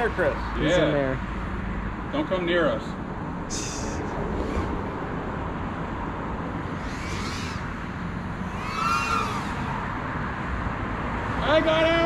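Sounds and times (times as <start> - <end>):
outdoor rumble and hiss: 0.0 - 12.0
drone motors whining: 6.4 - 10.1.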